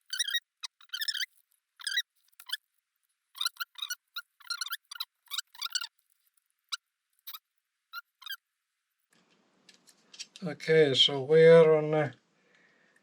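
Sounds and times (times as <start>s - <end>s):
metal blade squeaking and scraping: 0.0s - 2.6s, 3.4s - 6.0s, 8.0s - 8.4s.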